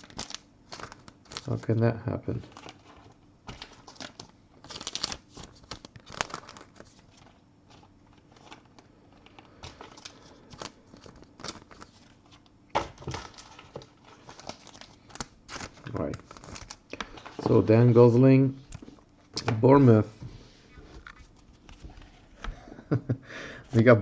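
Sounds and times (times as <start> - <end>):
plastic crinkling and rustling: 0.0 - 19.1.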